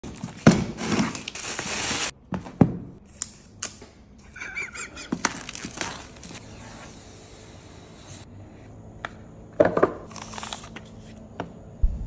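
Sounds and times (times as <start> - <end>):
packaging tearing and crinkling: 0.0 - 2.1, 5.1 - 6.4, 10.1 - 11.1.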